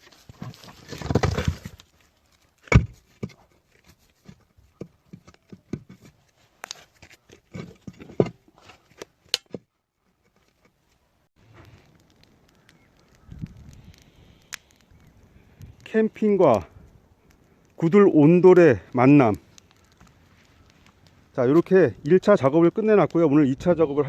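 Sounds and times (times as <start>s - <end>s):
rough scraping: 0.0s - 4.5s.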